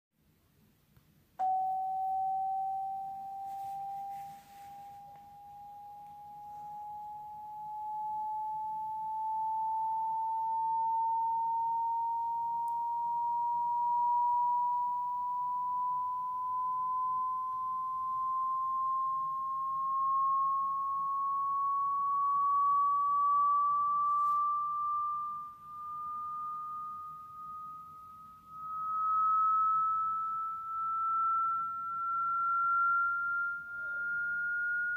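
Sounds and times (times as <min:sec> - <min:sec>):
rising test tone sweep: 0:01.4 - 0:34.9.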